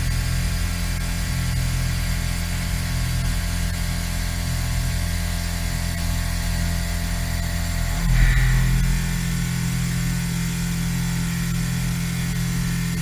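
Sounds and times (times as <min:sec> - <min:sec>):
milling machine hum: 0:07.4 - 0:10.9.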